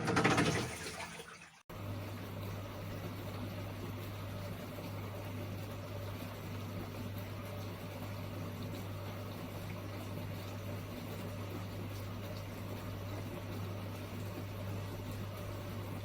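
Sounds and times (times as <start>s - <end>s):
water churning: 0.0s - 1.6s
dishwasher pump motor hum: 0.0s - 16.0s.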